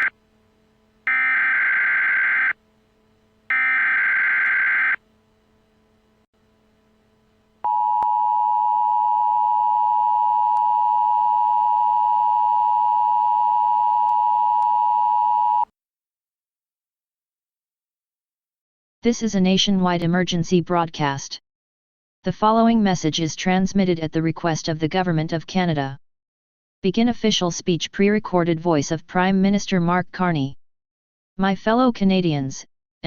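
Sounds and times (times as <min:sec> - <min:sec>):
screechy digital data tones: 0:01.1 - 0:02.6, 0:03.5 - 0:05.0.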